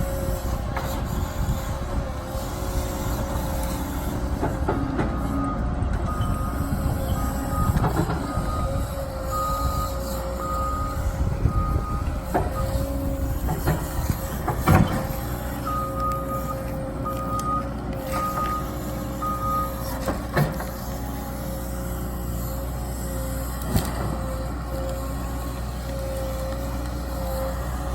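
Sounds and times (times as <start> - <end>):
diesel engine running: 0.0 - 27.9
backup alarm beeping: 5.2 - 12.8.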